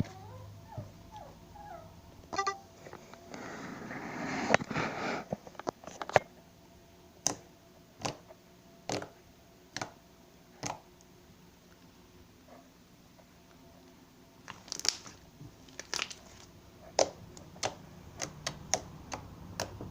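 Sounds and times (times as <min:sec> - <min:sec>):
slime popping: 0:08.9 - 0:09.1, 0:14.4 - 0:19.8
slime squishing and crackling: 0:14.4 - 0:19.8.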